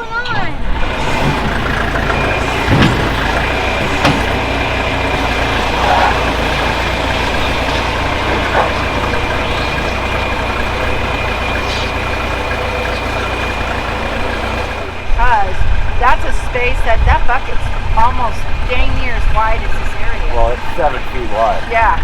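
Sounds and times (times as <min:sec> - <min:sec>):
backhoe engine running: 0:00.0 - 0:22.0
short knocks: 0:01.0 - 0:14.8.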